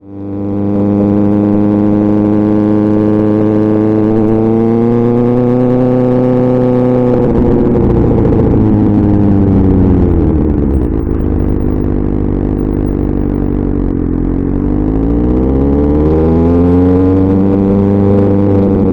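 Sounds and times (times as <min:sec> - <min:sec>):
motorcycle engine revving: 0:05.6 - 0:18.7.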